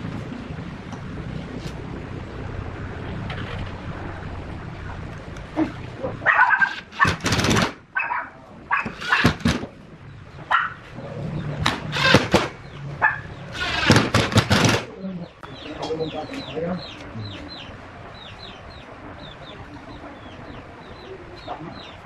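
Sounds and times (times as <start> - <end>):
dog barking: 6.2 - 7.1, 8.0 - 9.2, 10.5 - 10.8, 13.0 - 13.3.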